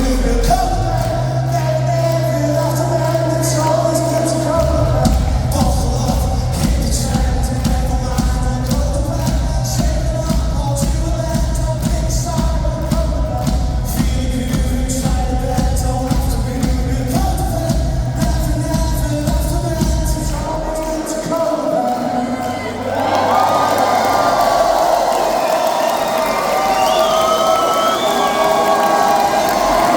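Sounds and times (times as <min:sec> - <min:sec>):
bass guitar: 0:00.0 - 0:21.0
person singing: 0:00.0 - 0:24.8
drums: 0:00.0 - 0:29.9.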